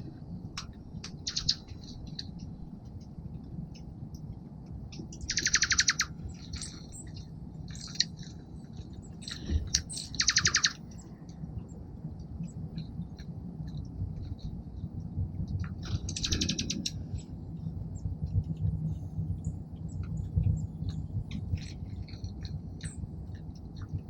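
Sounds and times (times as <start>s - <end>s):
songbirds chipping: 0.0s - 3.9s, 4.9s - 24.0s
low background rumble: 0.0s - 24.0s
harsh buzzy bird calls: 1.2s - 1.9s, 5.2s - 8.2s, 9.2s - 11.1s, 16.0s - 17.2s.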